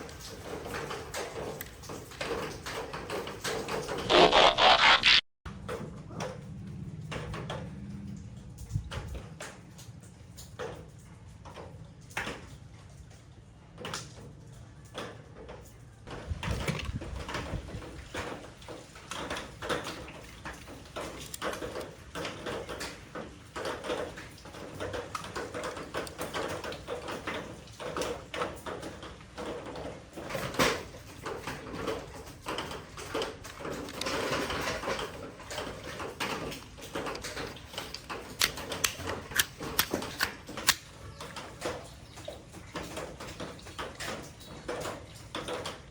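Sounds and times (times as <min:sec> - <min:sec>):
plastic toys clicking and knocking: 0:13.8 - 0:45.9.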